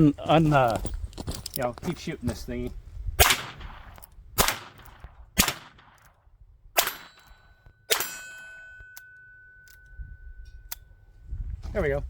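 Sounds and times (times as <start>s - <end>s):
revolver gunshots: 3.2s - 6.1s, 6.8s - 8.7s
lingering ring: 6.8s - 11.2s.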